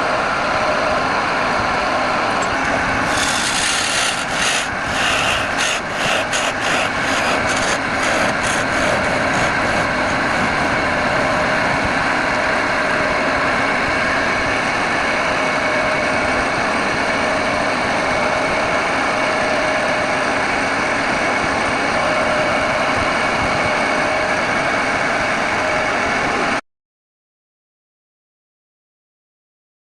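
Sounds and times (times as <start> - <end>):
wood lathe motor hum: 0.0 - 26.6
sanding strokes on spinning wood: 2.6 - 11.6.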